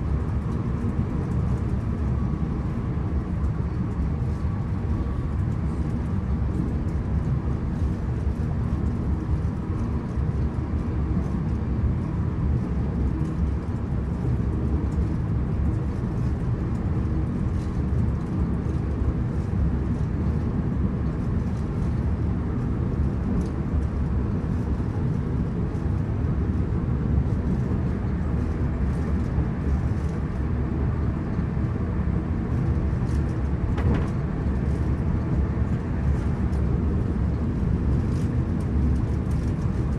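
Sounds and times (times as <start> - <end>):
train wheels rumbling: 33.7 - 35.0
faint ticks and rattles: 37.5 - 39.9.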